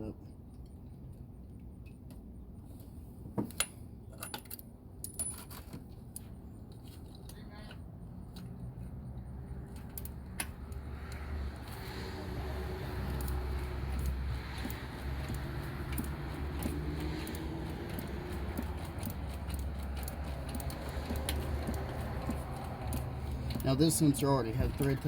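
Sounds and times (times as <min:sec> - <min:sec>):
wrench clicking on metal: 0:13.1 - 0:23.6.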